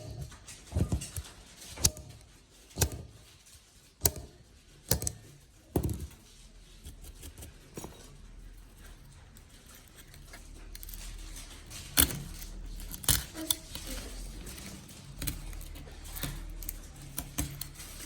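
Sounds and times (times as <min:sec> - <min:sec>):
hard objects knocking: 0:04.0 - 0:06.2.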